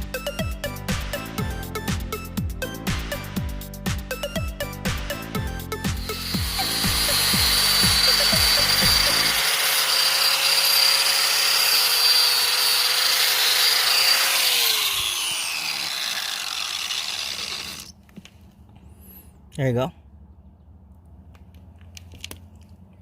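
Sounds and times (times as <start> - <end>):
background music with a beat: 0.0 - 9.1
power grinder whining on metal: 5.9 - 18.0.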